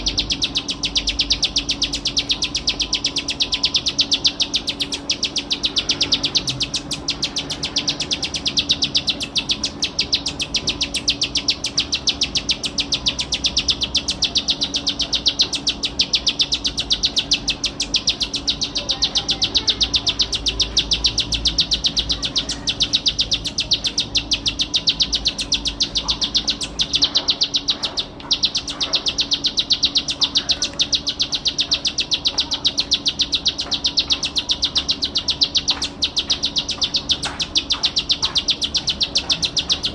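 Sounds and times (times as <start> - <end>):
bird singing buzzy trill: 0.0 - 39.9.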